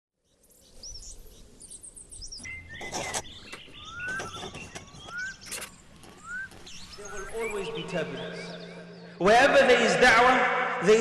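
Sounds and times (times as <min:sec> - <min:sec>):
birds chirping: 0:00.2 - 0:11.0
whistled bird calls: 0:00.5 - 0:09.2.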